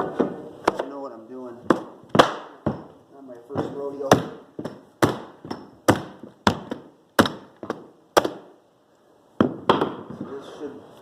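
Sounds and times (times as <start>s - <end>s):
mallet knocking flooring nailer: 3.5s - 8.5s.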